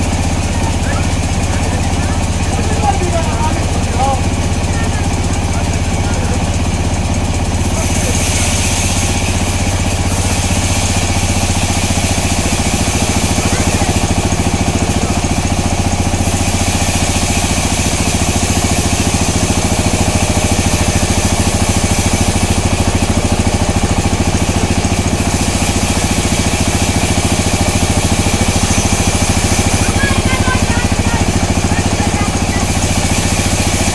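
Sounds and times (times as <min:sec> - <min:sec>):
saw hissing through log: 0:00.0 - 0:33.9
sawmill machinery droning: 0:00.0 - 0:33.9.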